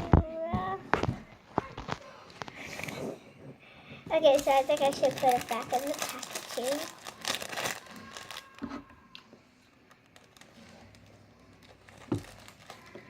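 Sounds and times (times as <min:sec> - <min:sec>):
packaging crinkling: 0:04.2 - 0:08.6, 0:09.9 - 0:13.0.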